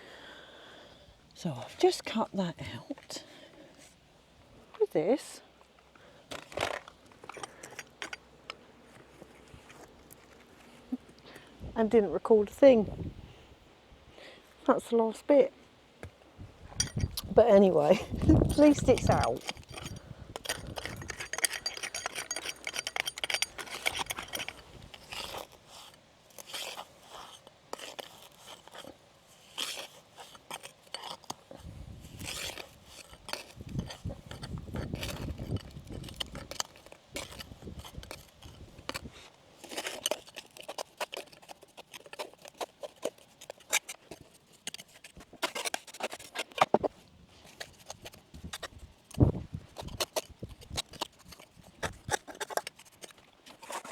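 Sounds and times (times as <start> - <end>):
hand tool scraping stone: 6.3 - 11.1, 16.7 - 53.9.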